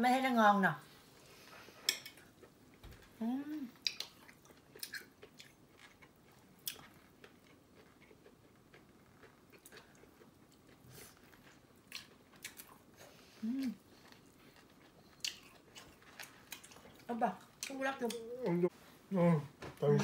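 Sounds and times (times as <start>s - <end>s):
quiet chewing: 1.2s - 18.6s
person humming: 3.2s - 3.7s, 13.4s - 13.8s, 18.1s - 20.0s.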